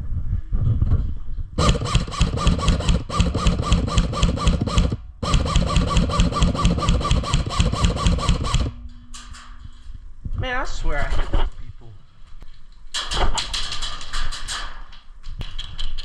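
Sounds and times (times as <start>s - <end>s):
airsoft gun firing full auto: 1.6s - 8.8s.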